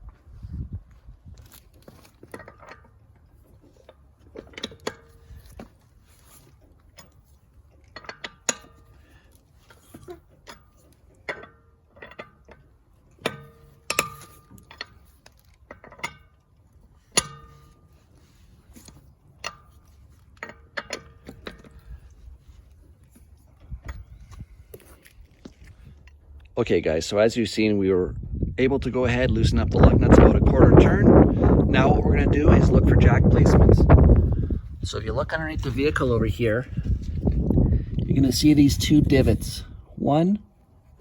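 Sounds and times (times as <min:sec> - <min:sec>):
wrench clinking on lug nuts: 0:06.3 - 0:22.2.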